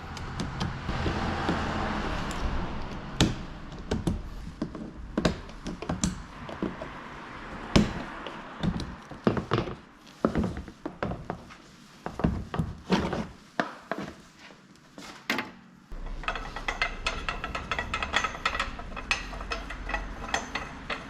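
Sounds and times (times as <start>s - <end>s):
hand tools and metal parts knocking: 15.3s - 21.0s.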